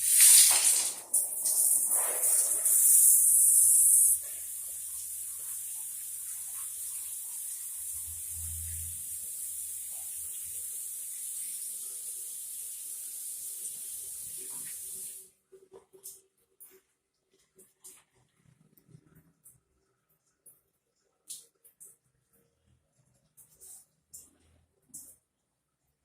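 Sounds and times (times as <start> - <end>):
water spraying: 0.0 - 12.2.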